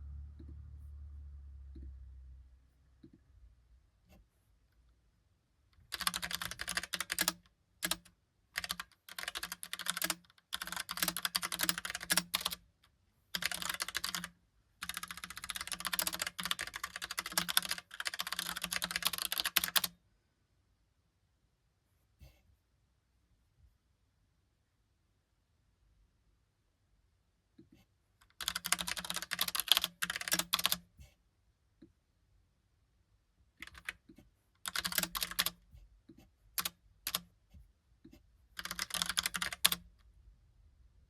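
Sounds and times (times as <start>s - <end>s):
mechanical keyboard keys clacking: 5.9s - 12.6s, 13.4s - 19.9s, 28.3s - 30.8s, 34.6s - 35.6s, 36.6s - 37.2s, 38.6s - 39.8s.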